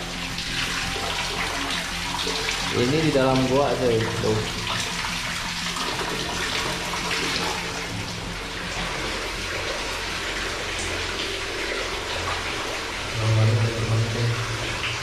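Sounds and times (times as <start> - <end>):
water rushing through tunnel: 0.0 - 15.0.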